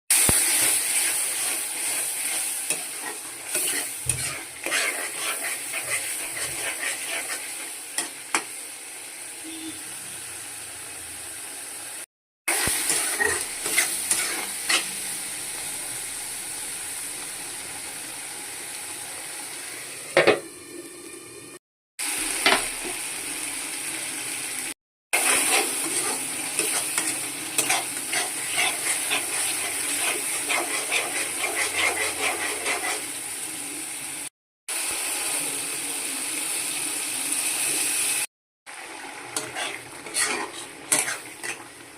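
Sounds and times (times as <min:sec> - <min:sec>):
food sizzling in hot oil: 0:00.1 - 0:41.9
spatula scraping a pan: 0:00.5 - 0:08.5, 0:12.5 - 0:15.0, 0:25.2 - 0:33.2, 0:39.3 - 0:41.8.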